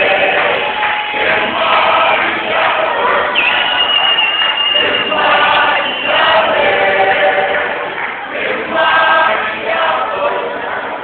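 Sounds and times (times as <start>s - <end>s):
choir singing gospel song: 0.0s - 11.0s.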